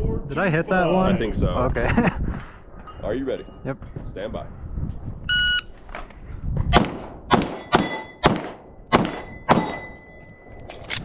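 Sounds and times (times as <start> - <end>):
pistol shots: 6.7 - 10.0
steel targets ringing: 7.3 - 10.7.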